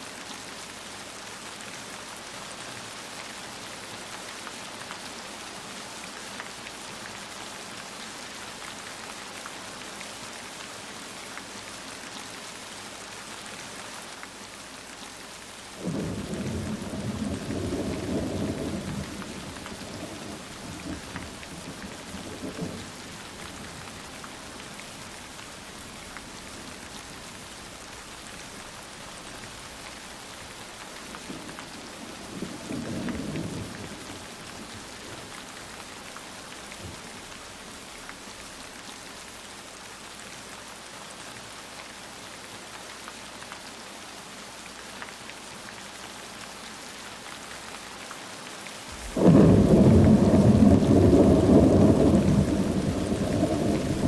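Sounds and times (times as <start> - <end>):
heavy rain: 0.0 - 54.0
thunder rolling: 49.0 - 54.0.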